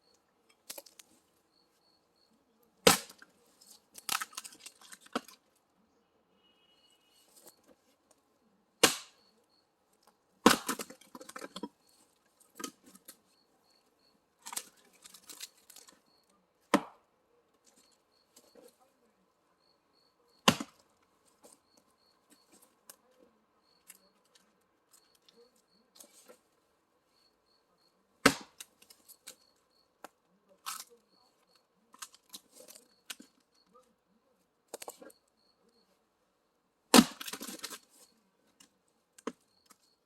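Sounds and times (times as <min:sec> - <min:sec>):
axe chopping firewood: 0:02.8 - 0:03.2, 0:08.8 - 0:09.2, 0:10.4 - 0:11.7, 0:16.7 - 0:17.0, 0:20.4 - 0:20.8, 0:28.2 - 0:28.7, 0:36.9 - 0:37.8.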